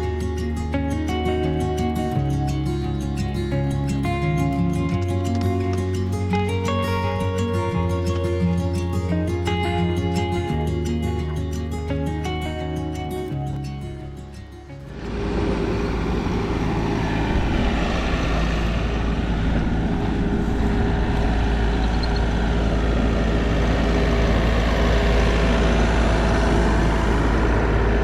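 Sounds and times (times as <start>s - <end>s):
heavy engine droning: 0.0s - 28.0s
steady hum: 13.9s - 28.0s.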